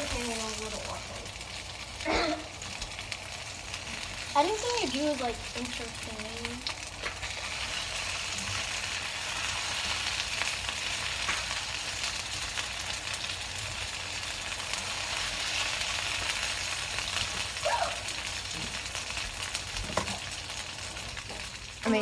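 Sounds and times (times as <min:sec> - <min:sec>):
chicken sizzling in hot oil: 0:00.0 - 0:22.0.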